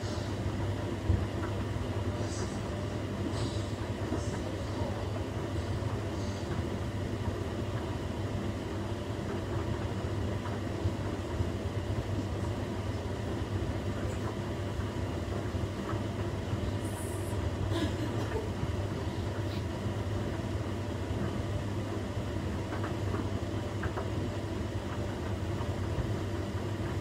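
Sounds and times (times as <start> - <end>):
washing machine drum rumbling: 17.4 - 27.0.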